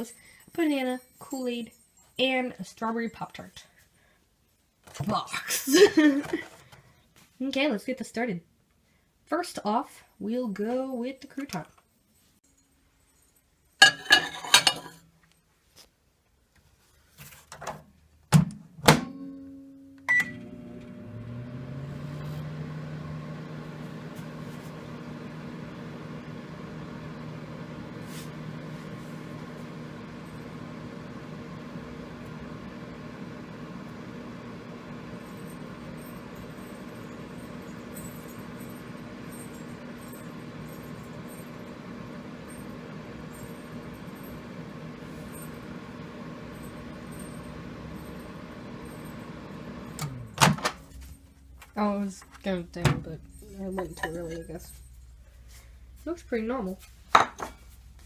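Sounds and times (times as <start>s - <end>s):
microwave oven humming: 19.0s - 54.6s.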